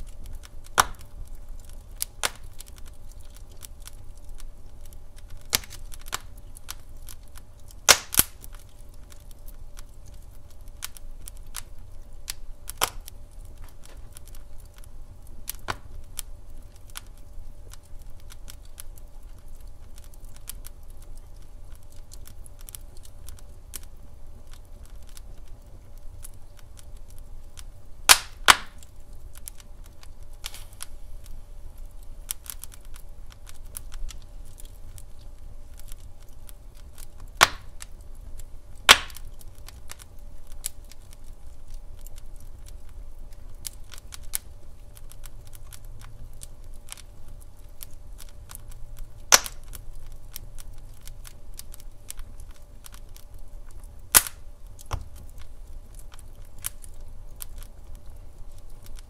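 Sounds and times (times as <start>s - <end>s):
wood fire crackling: 0.0s - 59.0s
sharp loud fire pops: 7.9s - 8.4s, 28.1s - 28.8s, 37.4s - 37.7s, 38.9s - 39.2s, 49.3s - 49.6s.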